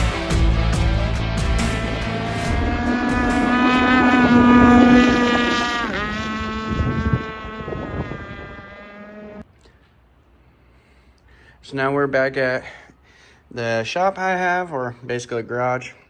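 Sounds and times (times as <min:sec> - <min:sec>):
two-stroke boat engine whining: 0:00.0 - 0:09.4
wind on microphone: 0:02.3 - 0:09.4.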